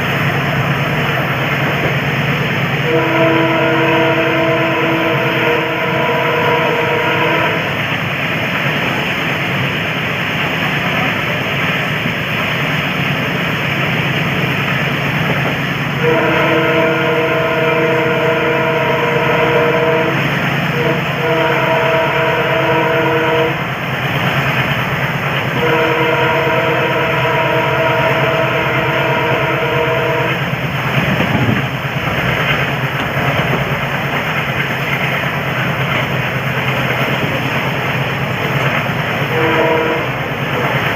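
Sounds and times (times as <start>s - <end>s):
moving train rumble: 0.0s - 40.9s
locomotive air horn blasts: 2.8s - 7.8s, 16.0s - 23.6s, 25.5s - 30.4s, 39.2s - 40.7s.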